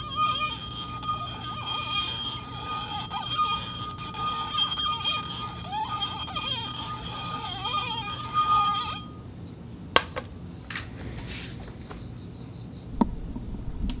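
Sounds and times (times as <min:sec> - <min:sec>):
glass cup clinking: 0:00.0 - 0:09.1
ringing tones with wavering pitch: 0:00.0 - 0:09.3.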